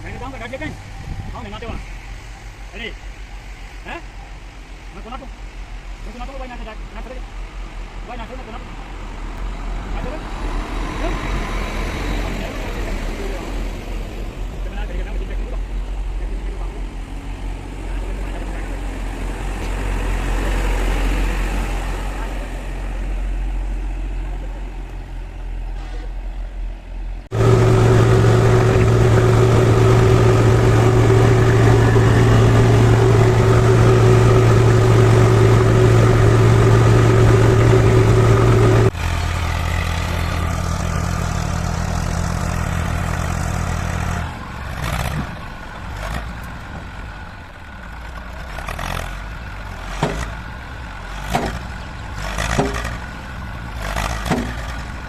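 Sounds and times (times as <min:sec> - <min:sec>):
heavy diesel engine running: 0:00.0 - 0:55.0
knocks and clanks: 0:49.8 - 0:50.4, 0:51.2 - 0:53.0, 0:53.8 - 0:55.0.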